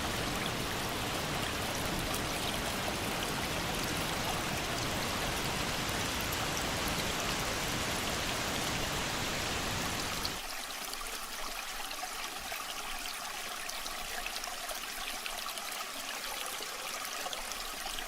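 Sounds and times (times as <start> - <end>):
waterfall rushing: 0.0 - 10.4.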